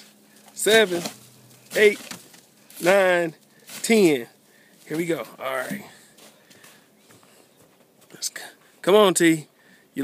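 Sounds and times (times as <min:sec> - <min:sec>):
footsteps in snow: 0:02.7 - 0:07.4.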